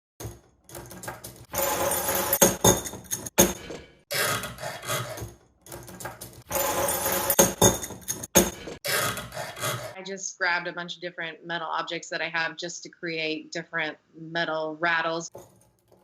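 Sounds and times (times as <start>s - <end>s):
metal objects rattling and clinking: 0.2s - 3.8s, 4.8s - 8.8s.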